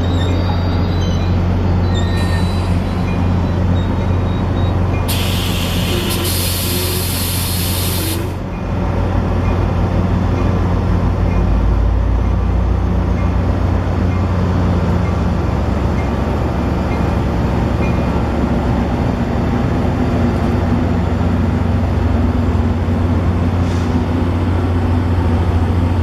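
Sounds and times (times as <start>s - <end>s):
diesel locomotive rumbling: 0.0s - 26.0s
air brakes hissing: 5.1s - 8.4s, 23.6s - 24.2s.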